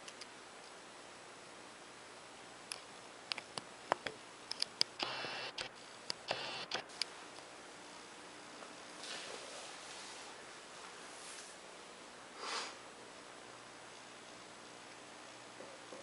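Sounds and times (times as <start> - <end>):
faint steady hiss: 0.0 - 16.0
sharp clicks and taps: 2.7 - 7.1.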